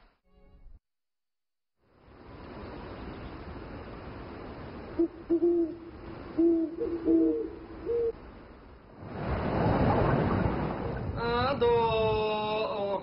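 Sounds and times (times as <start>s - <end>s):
bird hooting: 5.0s - 8.2s.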